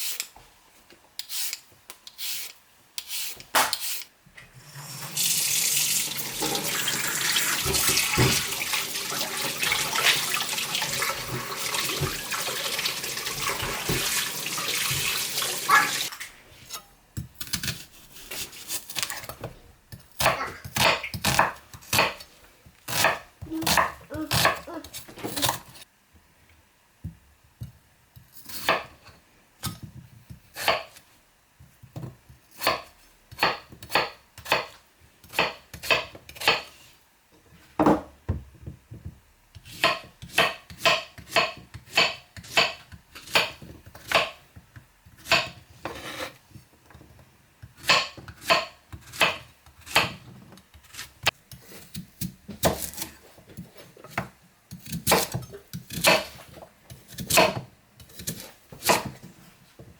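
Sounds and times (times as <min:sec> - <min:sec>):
knife chopping on cutting board: 0:32.5 - 0:36.7, 0:39.6 - 0:44.4, 0:45.2 - 0:46.3, 0:47.8 - 0:50.2, 0:54.1 - 0:59.2.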